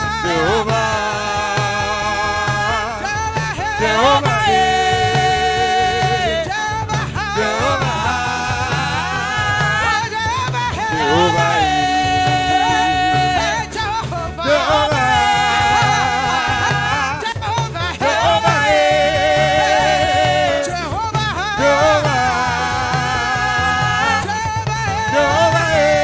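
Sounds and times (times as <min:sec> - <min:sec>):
band with rhythmic beat: 0:00.0 - 0:26.0
person singing with vibrato: 0:00.0 - 0:26.0.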